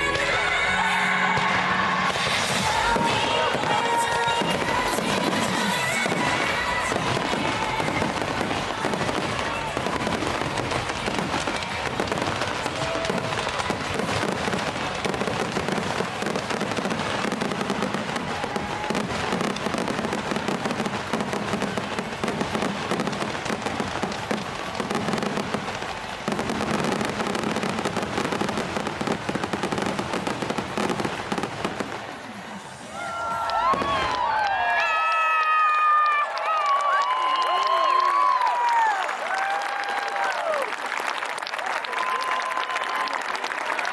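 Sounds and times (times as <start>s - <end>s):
music playing: 0.0s - 9.8s
fireworks bangs and crackles: 0.0s - 43.9s.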